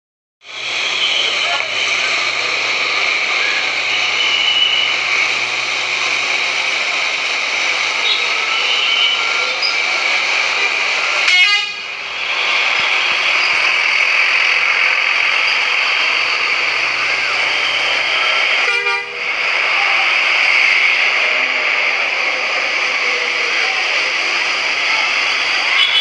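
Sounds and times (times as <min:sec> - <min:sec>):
bus horn sounding: 0:03.9 - 0:05.0, 0:08.0 - 0:09.5, 0:11.2 - 0:12.0, 0:18.6 - 0:19.2, 0:25.7 - 0:26.0.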